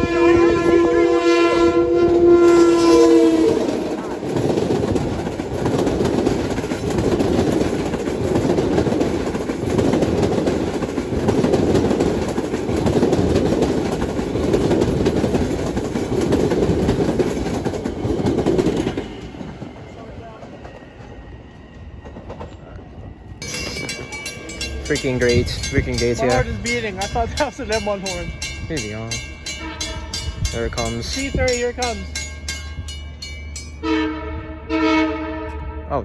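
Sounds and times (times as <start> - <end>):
passenger train passing: 0.0 - 36.0
wheels clattering on rails: 2.5 - 21.2, 23.4 - 33.8.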